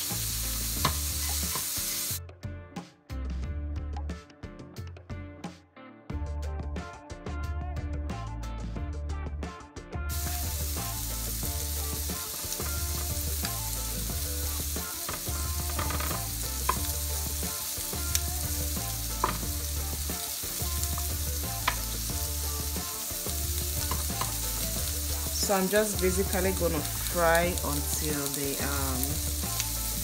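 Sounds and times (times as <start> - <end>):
chicken sizzling in a pan: 0.0 - 2.2, 10.1 - 30.0
music with bass line: 0.0 - 30.0.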